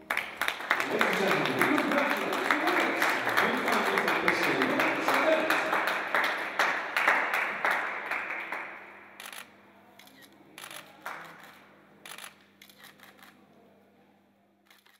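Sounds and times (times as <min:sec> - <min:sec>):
applause: 0:00.0 - 0:09.4, 0:10.6 - 0:11.6
camera shutter clicks: 0:09.2 - 0:13.4, 0:14.7 - 0:14.9.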